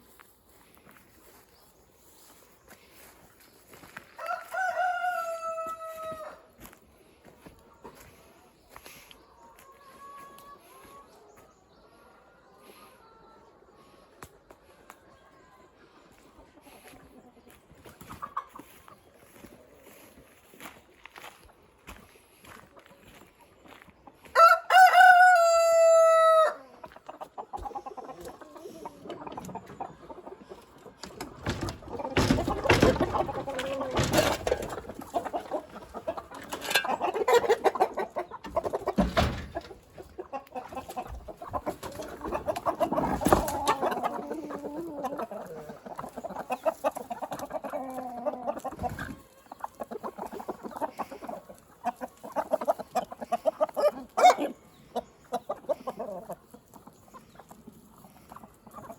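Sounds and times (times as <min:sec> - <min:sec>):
chickens clucking: 0:00.0 - 0:58.9
rooster crowing: 0:04.2 - 0:06.4, 0:24.4 - 0:26.6.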